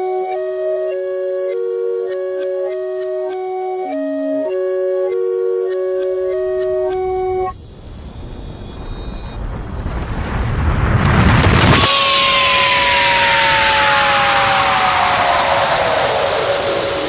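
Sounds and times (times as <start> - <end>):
organ-like music phrase: 0.0 - 7.6
rushing noise: 6.1 - 17.0.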